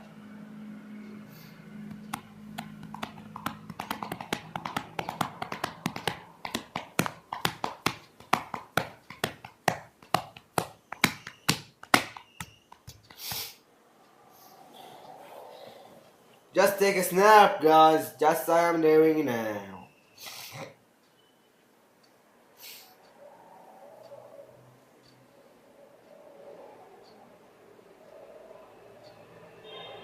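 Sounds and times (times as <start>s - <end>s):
sharp irregular clicks and taps: 1.9s - 13.6s.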